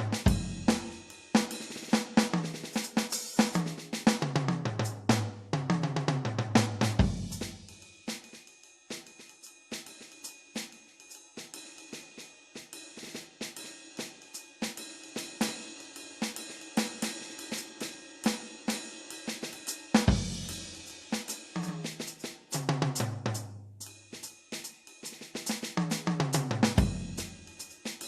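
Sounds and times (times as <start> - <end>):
electronic drums groove: 0.0 - 28.0
heavy low drum hit: 20.1 - 20.6.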